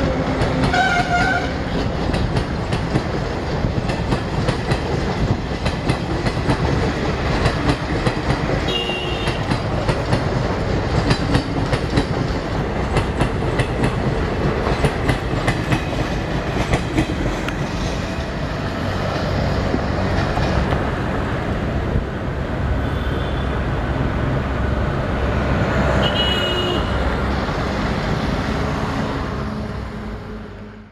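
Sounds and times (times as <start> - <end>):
train wheels clicking over joints: 0.0 - 21.4
train rumble: 0.0 - 30.9.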